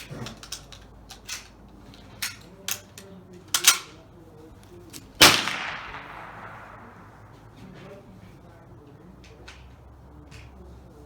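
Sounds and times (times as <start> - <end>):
gunshot with echo: 5.2 - 7.6.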